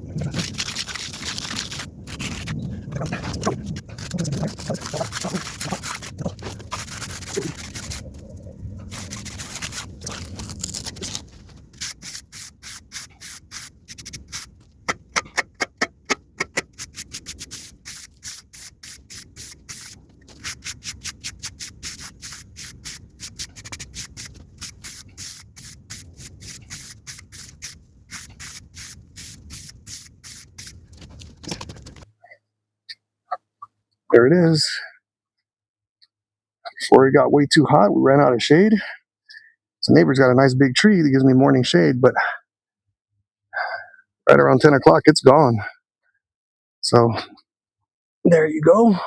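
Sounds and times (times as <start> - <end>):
edging tool scraping concrete: 0.2 - 8.2, 8.8 - 32.0.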